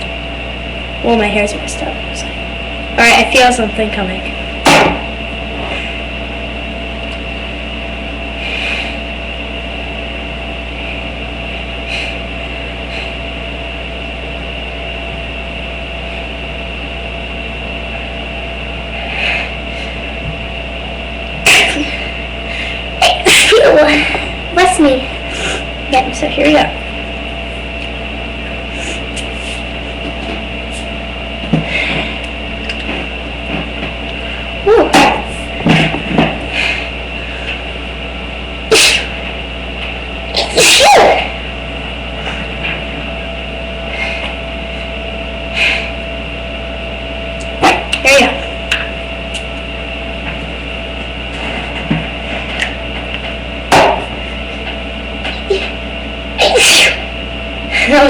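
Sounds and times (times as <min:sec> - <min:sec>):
low hum and hiss: 0:00.0 - 0:58.0
person sneezing: 0:21.4 - 0:22.0, 0:23.0 - 0:24.1, 0:38.7 - 0:39.1, 0:40.4 - 0:41.3, 0:56.4 - 0:57.1.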